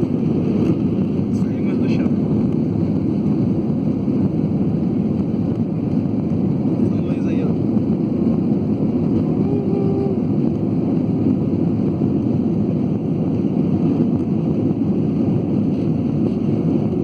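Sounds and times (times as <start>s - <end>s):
airplane engines rumbling: 0.0s - 17.0s
faint voice: 9.2s - 10.2s.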